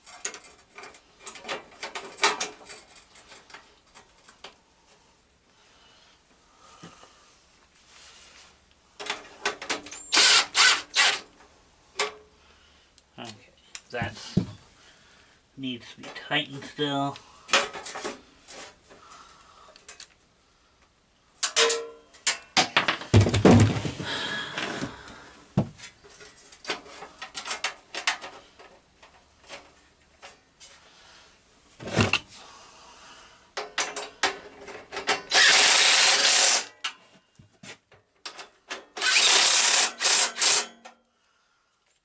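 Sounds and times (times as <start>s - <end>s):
power tool buzzing: 10.1s - 11.2s, 35.3s - 36.7s.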